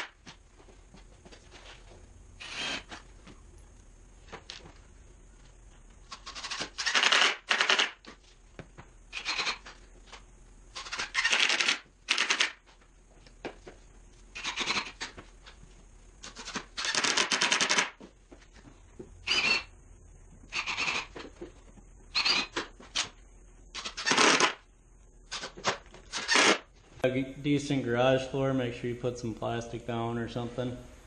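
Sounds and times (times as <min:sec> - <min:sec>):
power drill driving screws: 0:02.4 - 0:03.0, 0:06.1 - 0:07.9, 0:09.1 - 0:09.7, 0:10.8 - 0:12.6, 0:16.4 - 0:17.9, 0:19.2 - 0:19.7, 0:20.5 - 0:21.2, 0:22.1 - 0:22.6, 0:23.8 - 0:24.6, 0:25.3 - 0:26.6.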